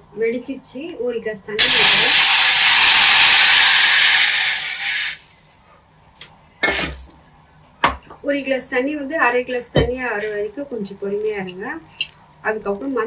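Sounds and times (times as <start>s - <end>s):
water hissing in hot pan: 1.6s - 5.6s, 6.6s - 7.2s.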